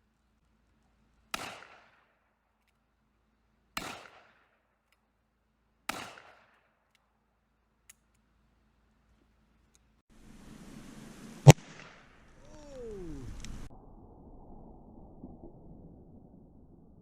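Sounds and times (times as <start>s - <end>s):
revolver gunshots with echo: 1.3s - 2.1s, 3.8s - 4.5s, 5.9s - 6.7s.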